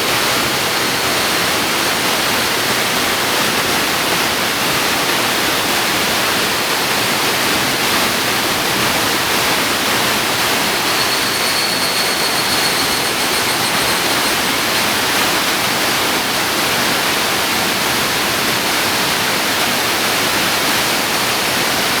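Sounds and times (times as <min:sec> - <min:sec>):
faint high-pitched tone: 0:10.1 - 0:15.7.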